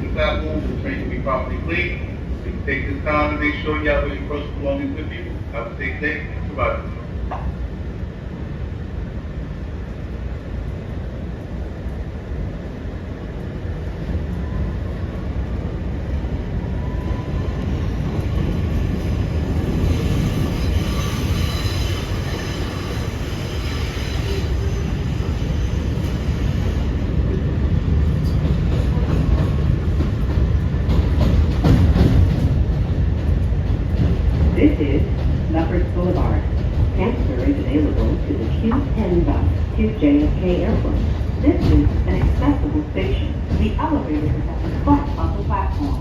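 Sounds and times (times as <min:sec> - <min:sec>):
train wheels rumbling on rail: 0:00.0 - 0:46.0.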